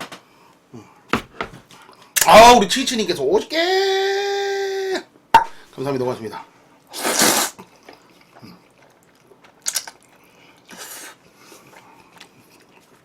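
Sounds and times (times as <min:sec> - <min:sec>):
close-miked eating and chewing: 0:07.6 - 0:13.0.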